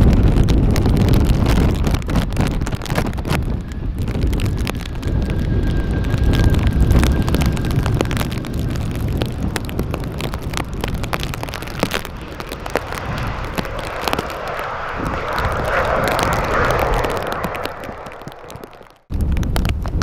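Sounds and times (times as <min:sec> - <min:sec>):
jet engine noise: 0:00.0 - 0:20.0
short crackles: 0:00.0 - 0:20.0
wind buffeting microphone: 0:00.0 - 0:20.0
faint high whine: 0:03.3 - 0:19.0.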